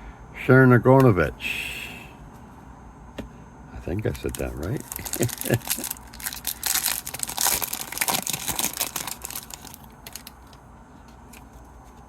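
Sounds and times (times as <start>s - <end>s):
trading cards rustling: 4.0s - 12.0s.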